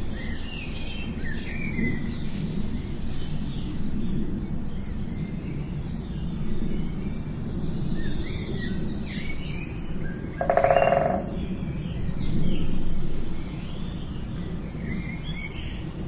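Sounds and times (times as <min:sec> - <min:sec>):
buzzy pitched call: 0:10.4 - 0:11.4
small birds chirping: 0:10.4 - 0:11.4.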